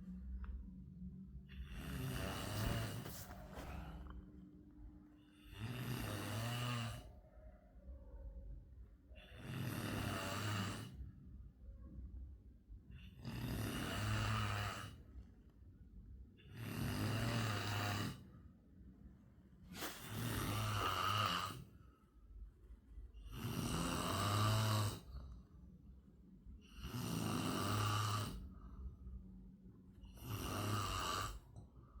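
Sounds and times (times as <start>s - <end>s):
quiet breathing: 0.0s - 32.0s
person snoring: 1.5s - 4.2s, 5.3s - 7.1s, 9.2s - 11.0s, 13.0s - 15.1s, 16.5s - 18.3s, 19.7s - 21.7s, 23.2s - 25.2s, 26.6s - 28.5s, 30.0s - 31.5s.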